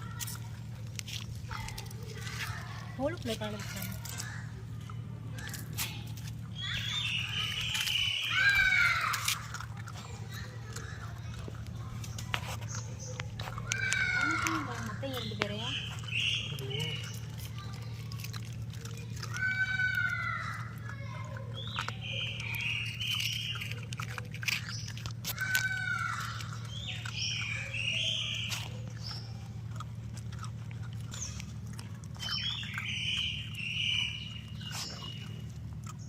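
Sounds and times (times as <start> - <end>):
puppies chewing and lapping: 0.0 - 36.0
high chirping calls: 6.5 - 9.6, 10.3 - 18.0, 19.4 - 29.7, 32.2 - 36.0.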